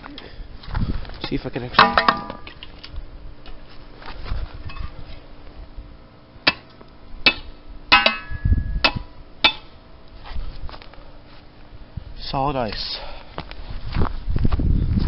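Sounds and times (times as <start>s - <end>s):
pan ringing: 7.2s - 9.7s.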